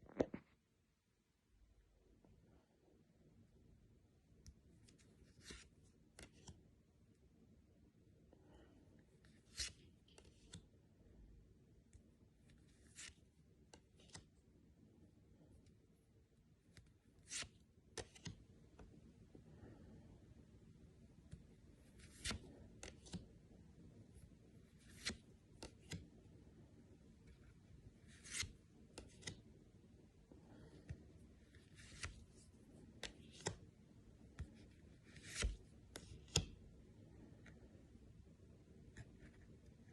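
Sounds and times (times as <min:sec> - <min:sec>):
playing cards flicking and rustling: 0:04.8 - 0:06.6, 0:09.3 - 0:10.7, 0:12.5 - 0:14.3, 0:16.7 - 0:18.5, 0:21.3 - 0:23.3, 0:24.8 - 0:26.2, 0:27.3 - 0:29.5, 0:30.5 - 0:36.6.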